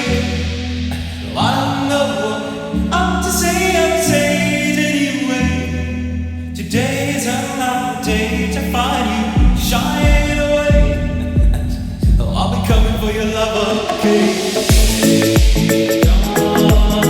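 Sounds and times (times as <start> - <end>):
bass line: 0.0 - 2.1, 8.1 - 17.0
music with singing voices: 0.0 - 17.0.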